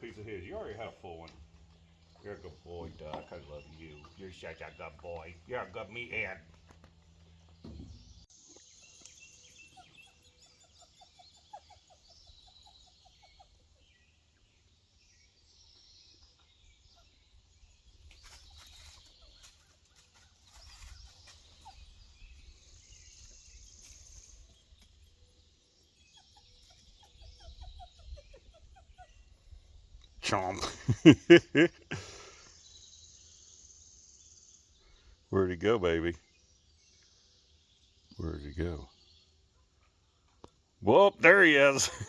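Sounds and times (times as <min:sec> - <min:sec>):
thin high bird calls: 0:00.0 - 0:14.5, 0:15.2 - 0:30.2.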